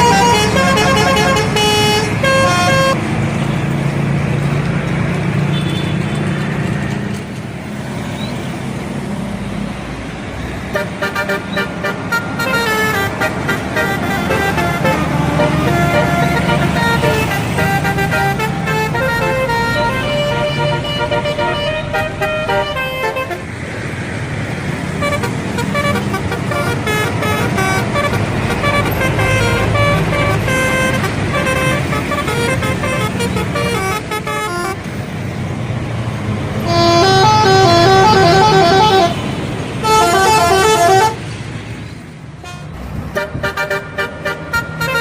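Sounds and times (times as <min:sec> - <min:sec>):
electric trumpet horns melody: 0:00.0 - 0:03.0, 0:10.8 - 0:23.5, 0:25.0 - 0:34.8, 0:36.6 - 0:41.2, 0:42.4 - 0:45.0
bus engine running: 0:00.0 - 0:45.0.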